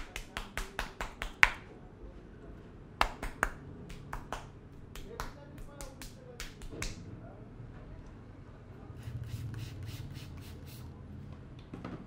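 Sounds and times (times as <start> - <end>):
steady low hum: 1.8 - 11.4.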